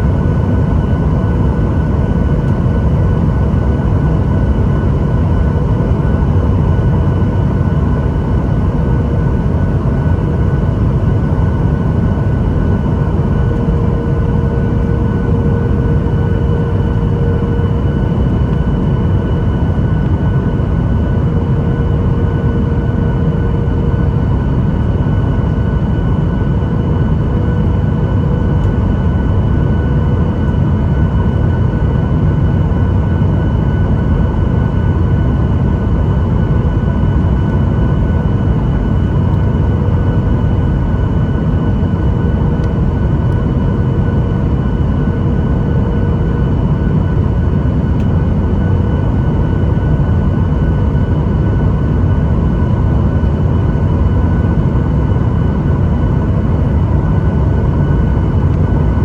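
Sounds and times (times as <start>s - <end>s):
jet cabin engine rumble: 0.0s - 59.0s.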